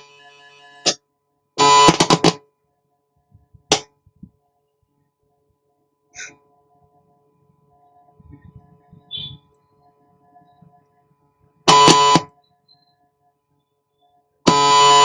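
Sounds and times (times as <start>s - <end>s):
speaker pops and crackling: 1.8s - 2.4s, 3.6s - 4.3s
faint steady tone: 4.2s - 15.0s.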